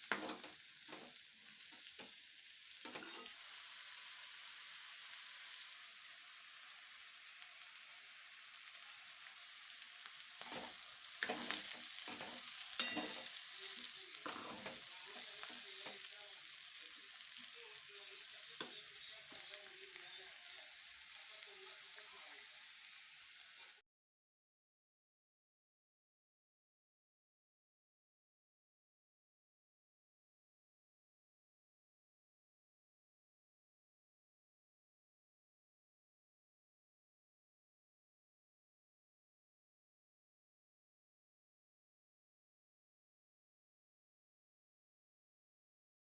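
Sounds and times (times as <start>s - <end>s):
food sizzling in a pan: 0.0s - 23.8s
utensil scraping and stirring: 2.9s - 3.4s, 10.4s - 16.0s.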